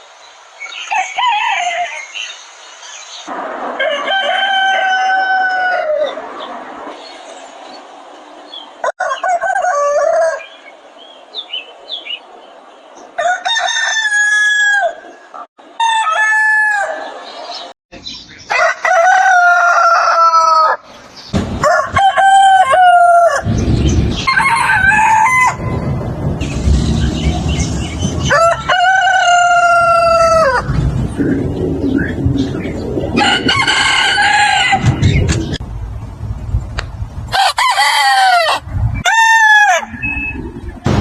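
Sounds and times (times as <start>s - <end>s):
roosters crowing: 0.7s - 2.2s, 3.3s - 6.6s, 8.5s - 11.2s, 13.1s - 17.6s, 18.4s - 35.6s, 37.3s - 40.5s
low rumbling noise: 23.3s - 37.7s, 38.6s - 41.0s.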